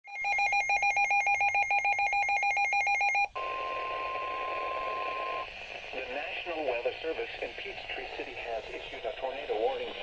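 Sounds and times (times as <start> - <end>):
steady warning alarm tone: 0.1 - 3.3
radio hiss: 3.4 - 10.0.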